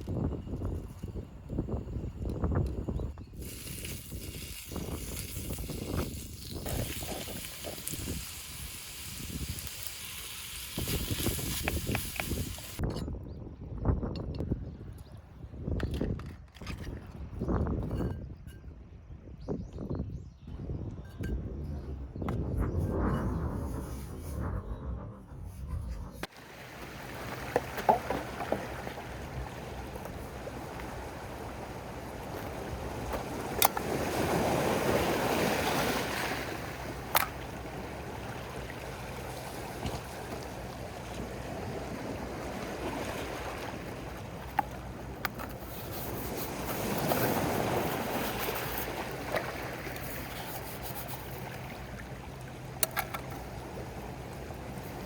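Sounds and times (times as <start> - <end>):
sea waves washing ashore: 26.2 - 55.0.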